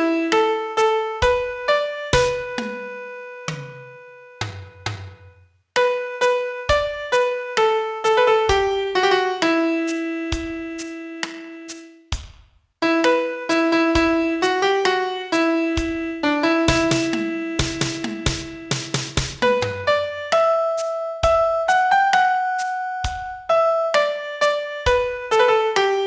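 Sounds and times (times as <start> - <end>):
piano melody: 0.0 - 5.2, 5.8 - 12.0, 12.8 - 26.0.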